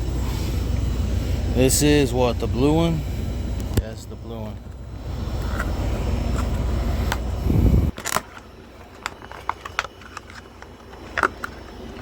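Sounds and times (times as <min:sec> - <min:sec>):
phone handling rumble: 0:00.0 - 0:12.0
plastic parts clicking: 0:07.9 - 0:12.0.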